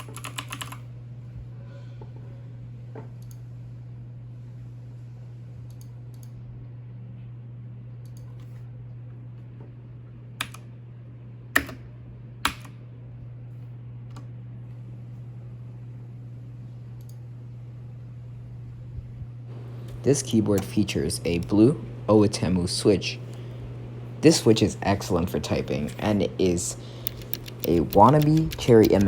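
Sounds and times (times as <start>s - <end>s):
steady low hum: 0.0s - 29.0s
mechanical keyboard key clicks: 27.0s - 29.0s.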